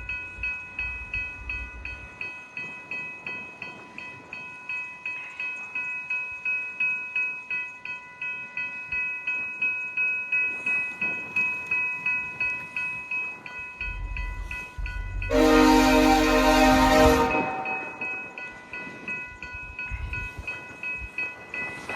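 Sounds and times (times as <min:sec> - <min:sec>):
level crossing bell ringing: 0:15.3 - 0:19.1.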